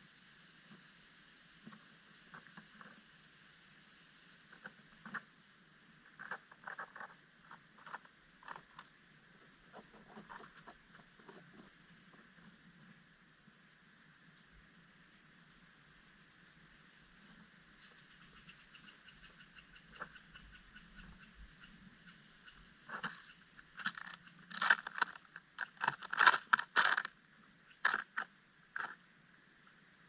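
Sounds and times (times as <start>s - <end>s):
birds pecking at seed: 6.1s - 12.5s, 17.8s - 29.0s.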